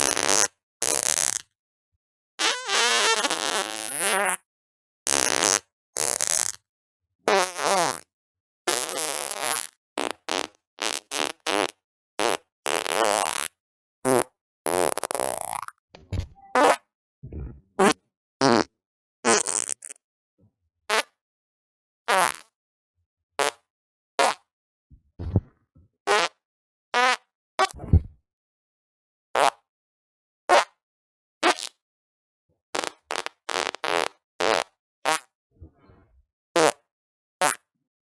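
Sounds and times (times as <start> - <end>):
fart sounds: 14.1 - 18.7, 25.1 - 26.3, 27.7 - 28.2, 32.8 - 36.8.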